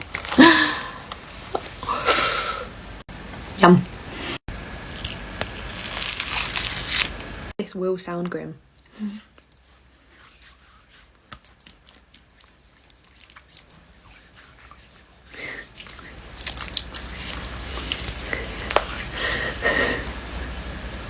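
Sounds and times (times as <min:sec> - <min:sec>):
wet crackling of peeling makeup: 0:04.7 - 0:07.2, 0:09.2 - 0:21.0.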